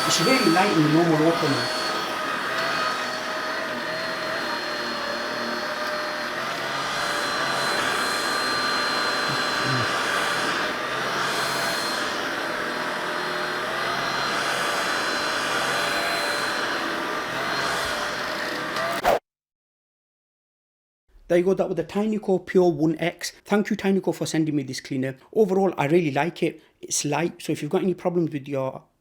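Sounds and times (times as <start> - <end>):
vacuum cleaner motor whine: 0.0 - 19.0.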